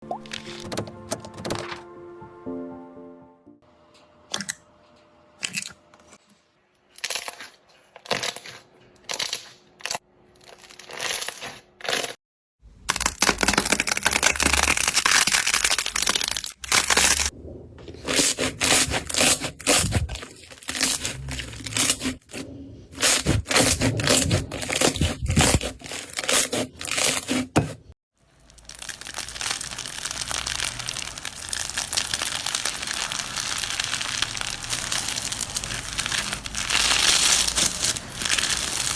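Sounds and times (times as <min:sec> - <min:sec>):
slime crackling and popping: 0:12.9 - 0:17.3, 0:28.3 - 0:38.9.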